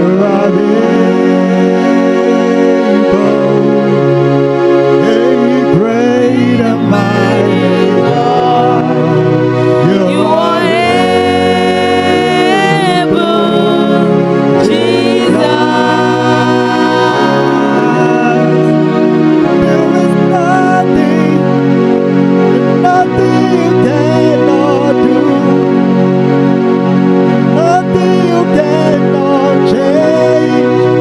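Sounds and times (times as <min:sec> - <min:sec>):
organ-like keyboard chords: 0:00.0 - 0:31.0
person singing solo: 0:05.1 - 0:21.5.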